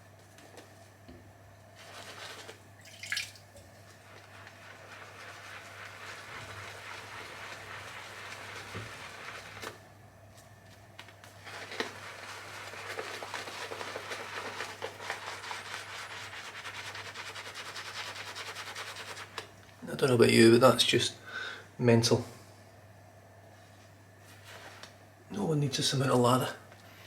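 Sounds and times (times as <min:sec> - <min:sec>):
shaving brush swishing lather: 0:01.8 - 0:02.6, 0:03.8 - 0:09.8, 0:11.3 - 0:19.5.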